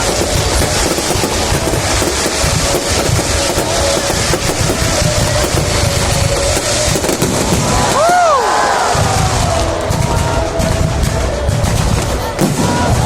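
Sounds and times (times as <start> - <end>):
fireworks crackling and popping: 0.0 - 13.0.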